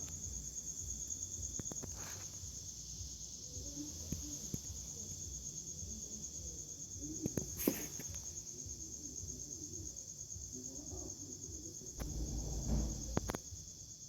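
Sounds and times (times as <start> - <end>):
crickets chirring: 0.0 - 14.0
short knock: 12.0 - 13.4.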